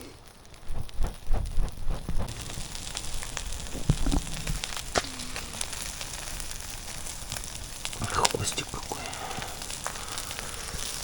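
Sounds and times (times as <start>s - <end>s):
campfire crackling and popping: 0.0s - 11.0s
fish sizzling on a grill: 0.0s - 11.0s
low thumps: 0.6s - 5.8s.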